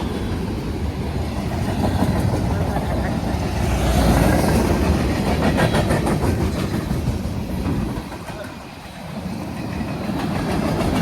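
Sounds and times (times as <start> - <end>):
freight cars rumbling past: 0.0 - 8.4
wheels clicking over rail joints: 0.5 - 11.0.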